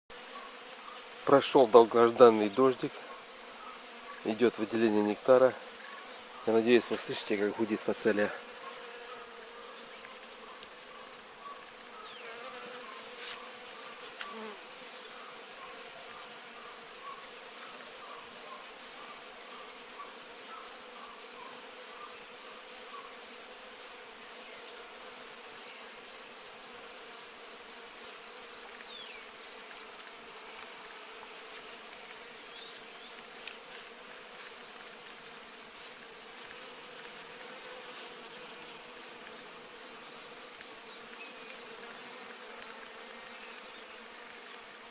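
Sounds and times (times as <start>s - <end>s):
bees buzzing: 0.1s - 44.9s.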